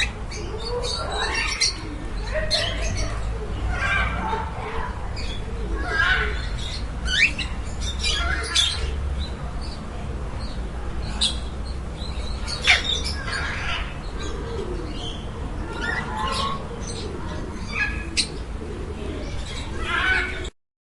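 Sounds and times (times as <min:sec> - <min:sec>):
parakeets chirping and squawking: 0:00.0 - 0:09.0, 0:10.4 - 0:18.4, 0:19.2 - 0:20.5
pigeons cooing: 0:00.0 - 0:09.8, 0:10.4 - 0:20.5.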